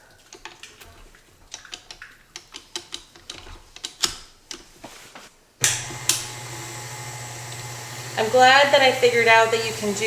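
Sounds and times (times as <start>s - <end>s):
stand mixer motor humming: 5.6s - 10.0s.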